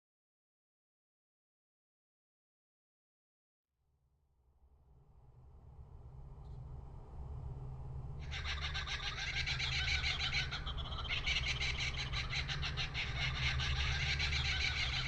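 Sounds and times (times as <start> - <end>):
low steady rumble: 4.5 - 15.0
birds chirping rapidly: 8.2 - 15.0.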